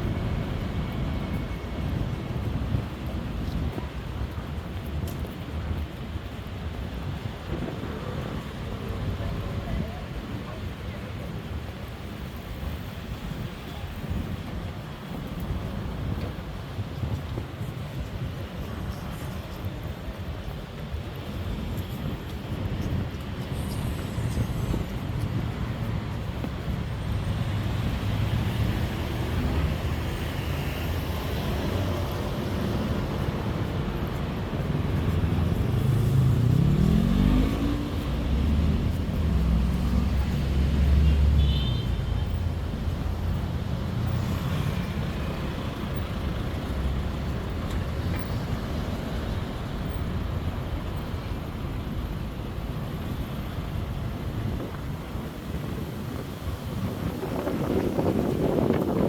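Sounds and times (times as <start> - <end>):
vehicles passing: 0.0 - 59.0
engine accelerating: 35.8 - 40.8.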